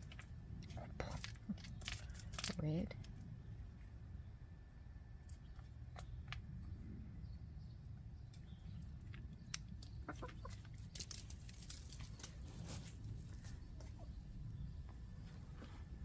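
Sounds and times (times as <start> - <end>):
steady low rumble: 0.0 - 16.0
hens clucking softly: 9.8 - 10.8.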